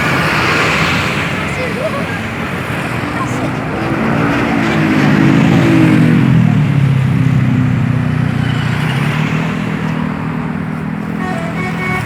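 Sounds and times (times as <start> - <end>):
bus diesel engine passing: 0.0 - 12.0
tyre and road noise: 0.0 - 12.0.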